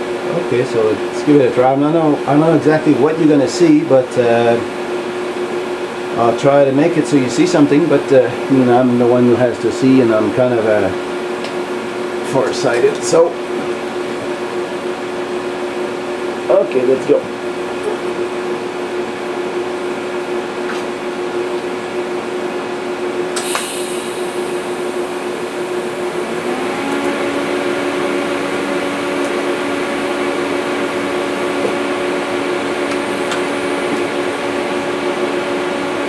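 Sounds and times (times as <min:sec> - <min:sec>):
welding arc hissing: 0:23.4 - 0:31.4
low hum: 0:23.8 - 0:34.6.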